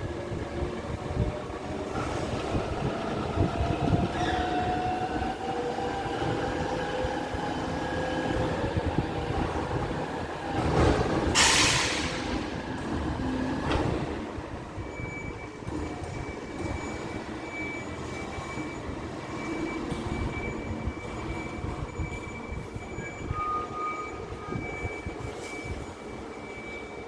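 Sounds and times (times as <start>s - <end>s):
garbage truck machinery: 3.2s - 27.0s
metallic squeals: 22.8s - 26.2s.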